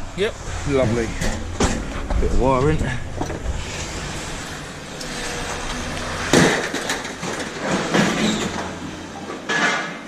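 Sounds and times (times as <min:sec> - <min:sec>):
scrap metal clattering: 0:00.6 - 0:10.0.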